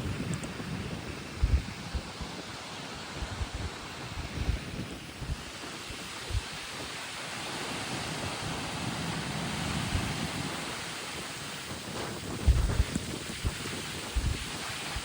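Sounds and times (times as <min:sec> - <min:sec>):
wind buffeting microphone: 0:00.0 - 0:15.0
low thumps on microphone: 0:01.4 - 0:02.3, 0:03.2 - 0:05.5, 0:12.4 - 0:13.6.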